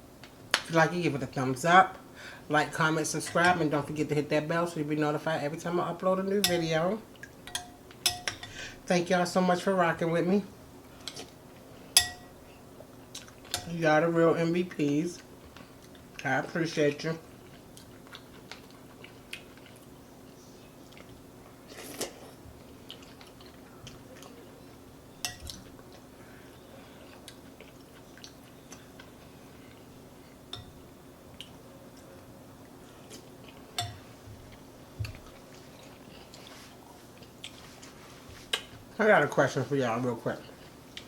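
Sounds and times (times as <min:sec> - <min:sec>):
person chewing: 0:17.3 - 0:24.5, 0:25.3 - 0:29.9, 0:31.3 - 0:37.9.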